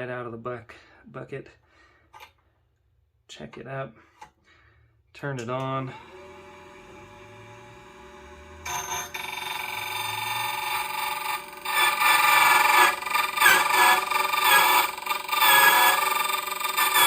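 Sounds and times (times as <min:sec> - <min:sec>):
motor whining: 0:06.0 - 0:17.0
cutter grinding metal key: 0:08.7 - 0:17.0.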